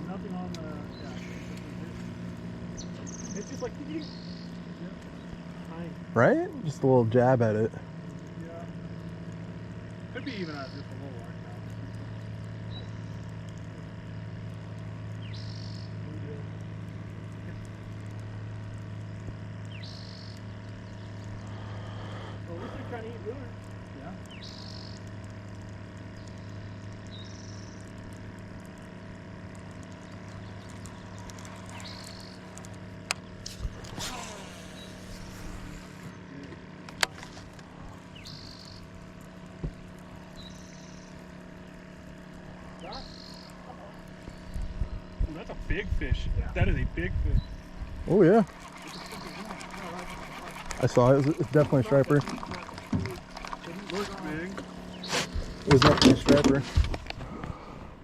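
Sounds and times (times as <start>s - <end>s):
boat motor humming: 0.0s - 58.0s
bird chirping: 2.7s - 5.4s, 15.2s - 16.0s, 19.6s - 21.4s, 24.3s - 25.1s, 26.1s - 27.9s, 30.0s - 32.5s, 38.0s - 38.9s, 40.2s - 41.7s, 42.7s - 45.3s, 48.6s - 50.7s.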